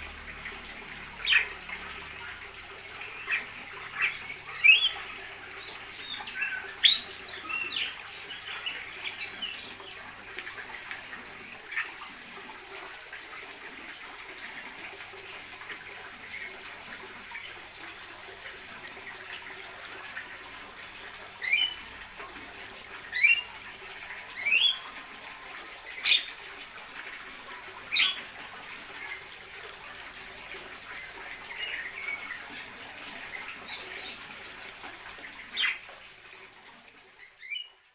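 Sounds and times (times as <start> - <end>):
birds chirping: 0.0 - 12.3, 18.7 - 21.9, 23.0 - 26.4, 27.5 - 29.3, 30.3 - 36.0, 37.2 - 37.8
loud sharp bird calls: 3.0 - 10.2.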